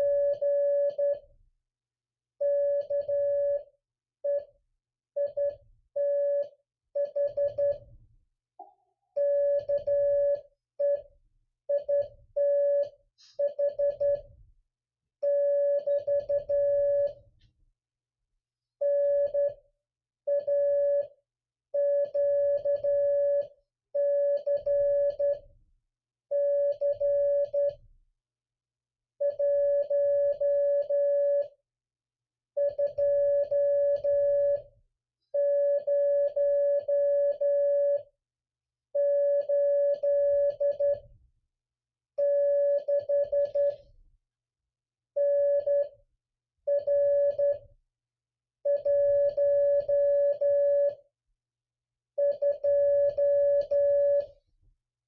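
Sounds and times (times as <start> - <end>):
morse code radio sidetone: 0.0 - 1.1.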